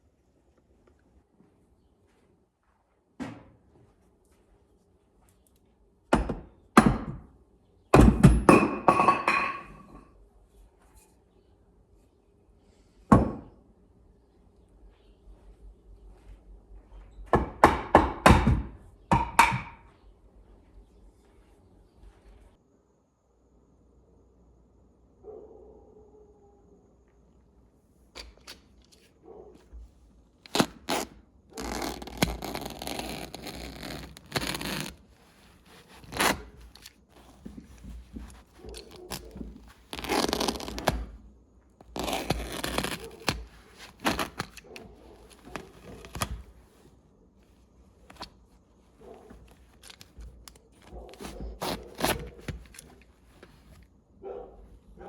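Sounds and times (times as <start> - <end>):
tearing and scraping on wood: 30.4 - 41.2, 41.8 - 46.7, 49.0 - 53.9.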